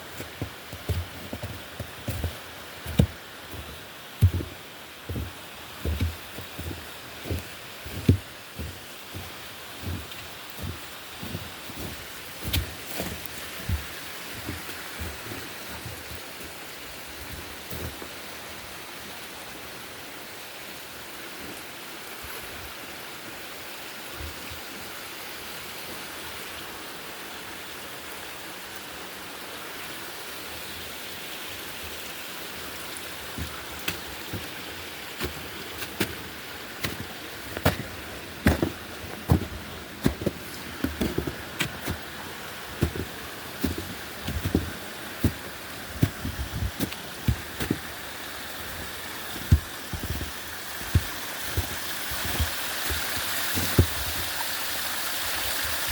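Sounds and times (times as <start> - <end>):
footsteps on trail: 0.0 - 18.1, 33.2 - 54.4
running water hiss: 0.0 - 55.9.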